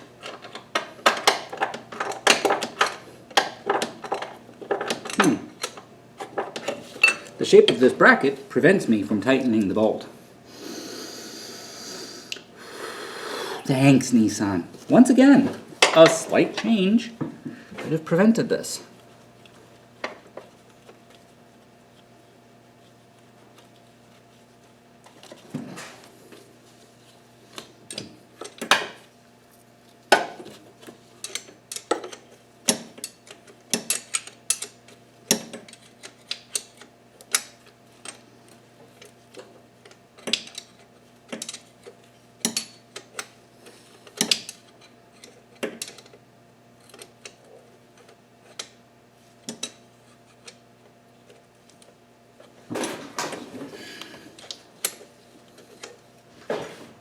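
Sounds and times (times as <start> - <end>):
faint steady hum: 0.0 - 57.0
hand tools and metal clinking: 0.2 - 7.9, 39.0 - 43.3.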